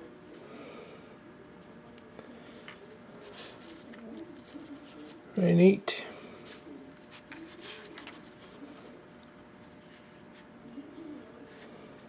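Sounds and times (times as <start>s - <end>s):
rustle of handling: 2.5s - 5.4s, 6.3s - 10.6s, 11.4s - 12.0s.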